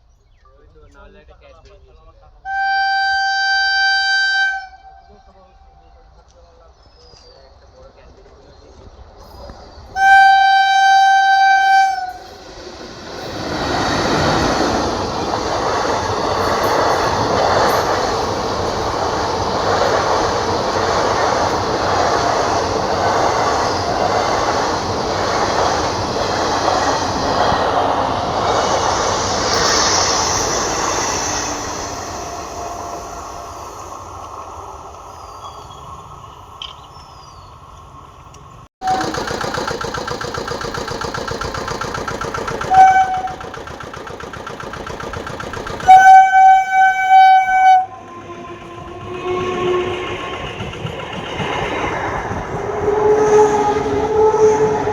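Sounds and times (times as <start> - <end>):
train passing wheel-on-rail noise: 0.0 - 54.9
train horn blast: 2.4 - 5.8, 9.9 - 12.4, 42.7 - 43.5, 45.8 - 50.4, 52.6 - 54.9.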